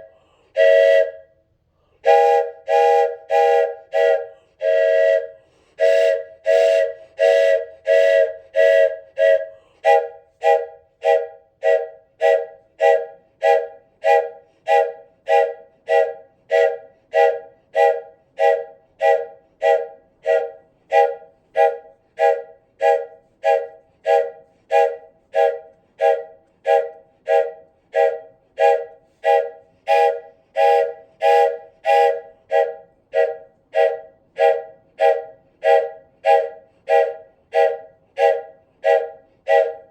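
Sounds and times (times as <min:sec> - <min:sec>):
wooden train whistle toots: 0:00.0 - 0:01.4, 0:02.0 - 0:39.9.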